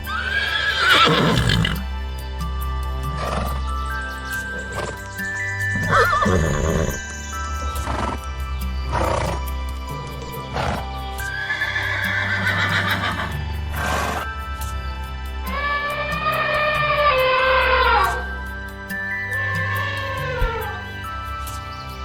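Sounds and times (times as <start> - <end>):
horse whinnying: 0.0 - 1.9, 5.8 - 7.0, 8.9 - 9.4, 10.5 - 14.3, 15.5 - 18.4, 19.1 - 21.0
calm background music: 0.0 - 22.0
breathy horse sounds: 0.5 - 1.8, 3.1 - 3.7, 4.3 - 5.1, 5.8 - 7.0, 8.9 - 9.5, 10.1 - 10.9, 12.3 - 14.3.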